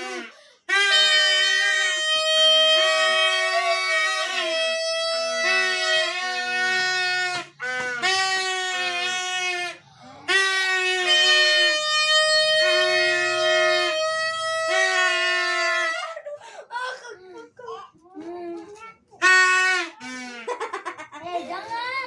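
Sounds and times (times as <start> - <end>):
reedy wind instrument music: 0.0 - 16.1, 19.2 - 20.6.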